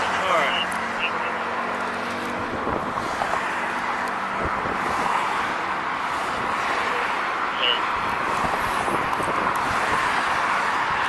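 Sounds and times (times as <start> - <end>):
road traffic noise: 0.0 - 11.0
wind on microphone: 4.3 - 5.1, 8.0 - 11.0.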